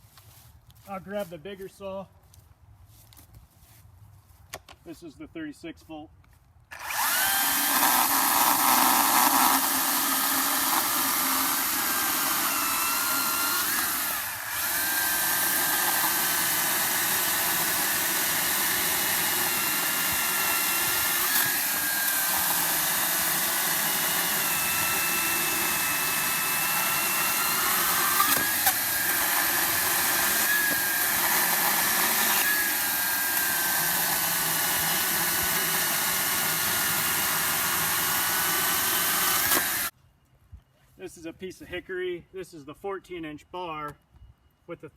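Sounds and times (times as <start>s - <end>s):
electric chainsaw cutting wood: 6.7s - 39.9s.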